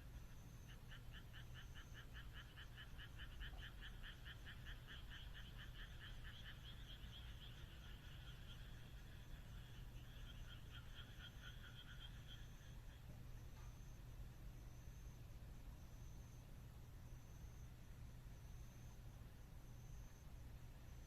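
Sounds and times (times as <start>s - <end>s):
frog croaking: 0.0s - 14.0s.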